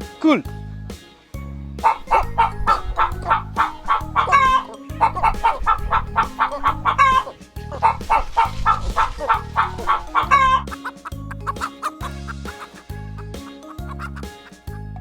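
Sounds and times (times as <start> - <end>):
upbeat music with steady bass: 0.0 - 15.0
rooster-like crow: 1.8 - 10.7
hen clucks: 1.8 - 12.8.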